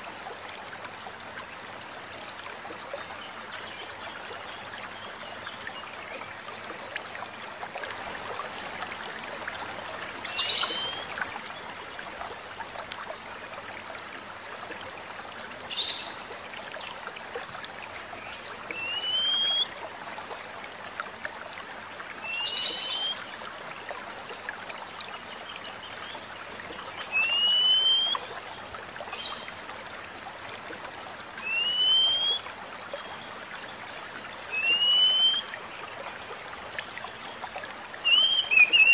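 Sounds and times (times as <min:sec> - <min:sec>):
running stream: 0:00.0 - 0:38.9
bird whistling call: 0:18.8 - 0:19.7, 0:27.1 - 0:28.2, 0:31.4 - 0:32.4, 0:34.5 - 0:35.5, 0:38.0 - 0:38.9.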